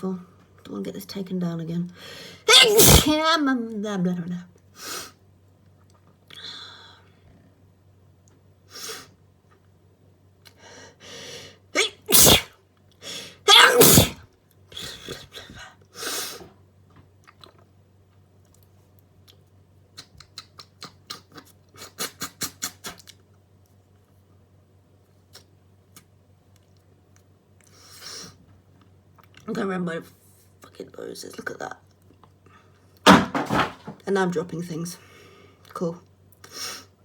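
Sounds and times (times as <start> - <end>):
breathing: 2.0 - 2.4, 6.4 - 7.4, 10.6 - 11.6, 32.4 - 32.8, 35.0 - 35.7
person sneezing: 2.5 - 3.2, 11.8 - 12.5, 13.1 - 14.2.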